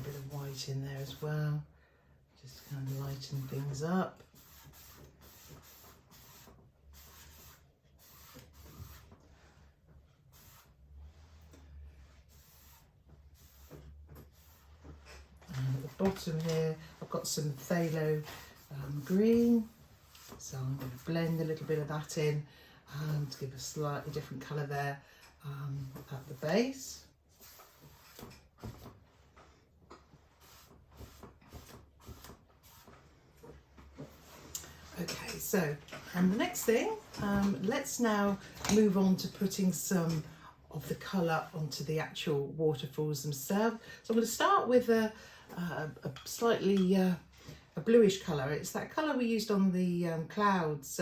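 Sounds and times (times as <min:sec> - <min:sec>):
paintbrush scratching on canvas: 0:00.0 - 0:01.3, 0:02.5 - 0:22.2, 0:25.7 - 0:29.0, 0:30.1 - 0:33.1.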